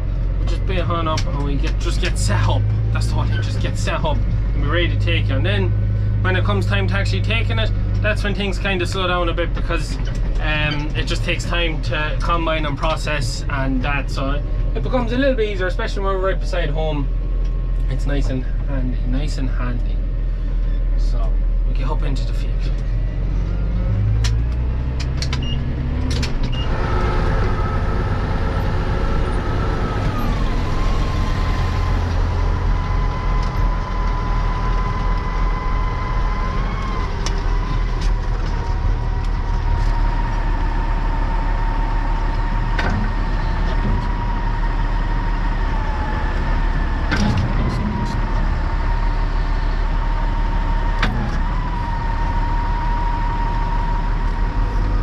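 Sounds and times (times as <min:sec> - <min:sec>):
tractor engine drone with whine: 0:00.0 - 0:55.0
sharp knocks and clicks: 0:24.2 - 0:26.6.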